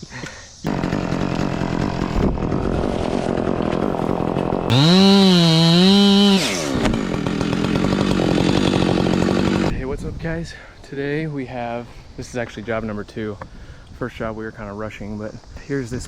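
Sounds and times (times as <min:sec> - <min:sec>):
chainsaw running and revving: 0:00.7 - 0:09.7.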